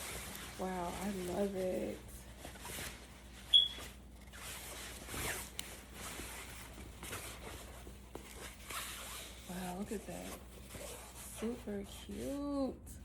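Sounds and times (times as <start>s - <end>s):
shower curtain rustling: 0.0s - 7.8s.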